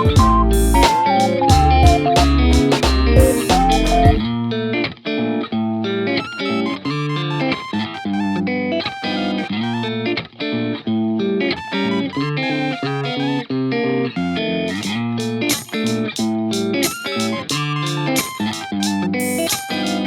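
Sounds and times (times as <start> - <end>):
electric guitar melody: 0.0 - 20.0.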